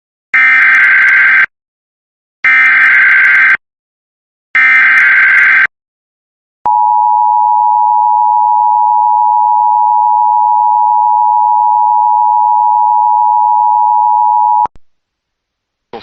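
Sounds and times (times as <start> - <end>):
two-tone alert alarm: 6.7 - 14.7.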